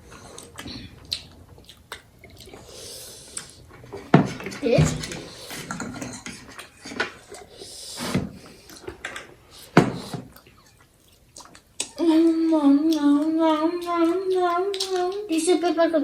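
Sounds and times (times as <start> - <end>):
eating sounds: 0.0 - 16.0
dishes and cutlery clinking: 3.9 - 7.5
child singing: 11.9 - 16.0.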